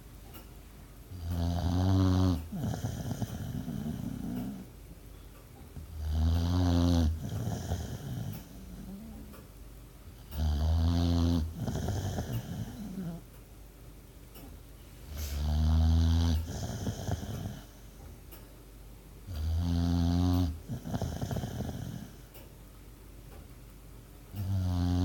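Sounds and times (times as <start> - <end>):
dog snoring: 1.1 - 4.8, 5.8 - 9.3, 10.2 - 13.3, 15.1 - 18.0, 19.3 - 22.3, 24.4 - 25.0
dog breathing softly: 2.4 - 4.7, 7.0 - 9.4, 11.4 - 13.3, 15.0 - 15.6, 16.3 - 18.2.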